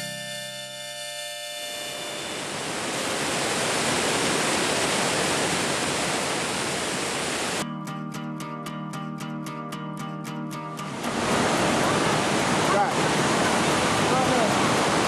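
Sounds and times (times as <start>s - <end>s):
rushing water: 2.3s - 7.6s, 10.8s - 15.0s.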